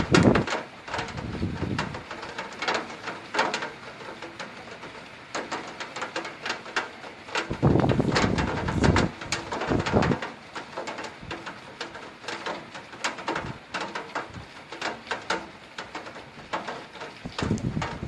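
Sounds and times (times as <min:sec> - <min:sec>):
thunder rumble: 0:00.0 - 0:02.2, 0:07.4 - 0:10.3, 0:17.2 - 0:18.0
heavy rain: 0:00.0 - 0:18.0
raindrops splattering: 0:00.0 - 0:18.0.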